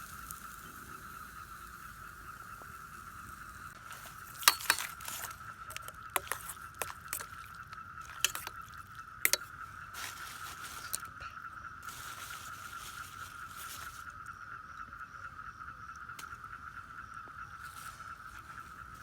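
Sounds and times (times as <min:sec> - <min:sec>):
sharp clicks and clinks: 0:04.2 - 0:09.5.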